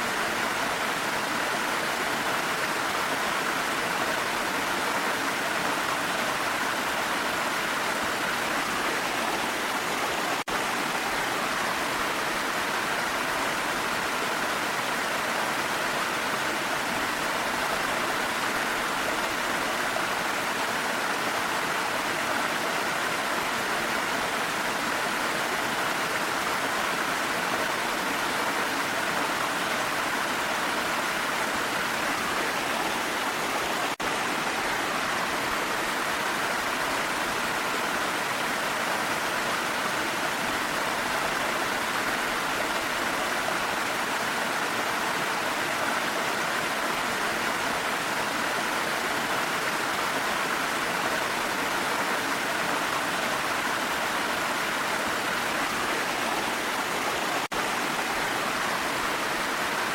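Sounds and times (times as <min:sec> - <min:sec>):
rain: 0:00.0 - 0:59.9
waterfall rushing: 0:00.0 - 0:59.9.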